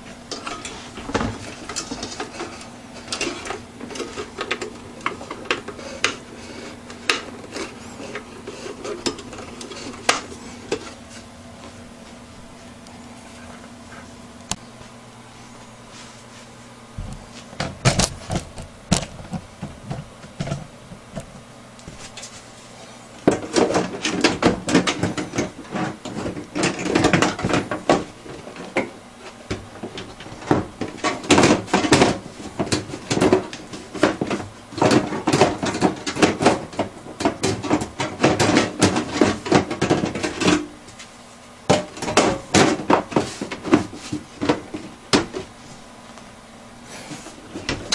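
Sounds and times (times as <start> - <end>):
clatter of plastic parts: 0.3 - 11.0, 23.2 - 41.0, 41.7 - 45.5.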